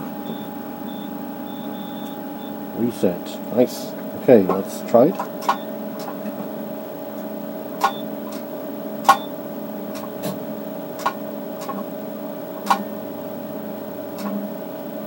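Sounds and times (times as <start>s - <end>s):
water cooling system hum: 0.0s - 15.0s
sharp clicks: 7.8s - 8.4s.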